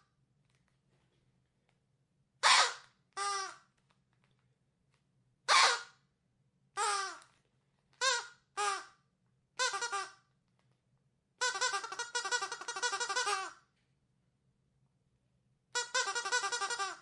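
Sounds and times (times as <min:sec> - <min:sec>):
rubber duck toy squeaking: 0:02.4 - 0:03.7, 0:05.5 - 0:06.0, 0:06.8 - 0:07.3, 0:08.0 - 0:09.0, 0:09.6 - 0:10.2, 0:11.4 - 0:13.6, 0:15.8 - 0:17.0.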